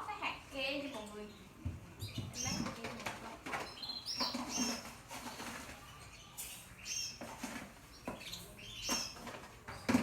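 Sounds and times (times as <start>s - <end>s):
canaries chirping: 0.1s - 10.0s.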